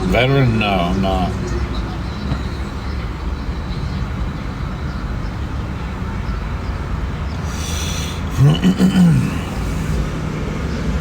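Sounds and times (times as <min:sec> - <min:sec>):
motor vehicle rumble: 0:00.0 - 0:11.0
even hiss: 0:07.4 - 0:10.2.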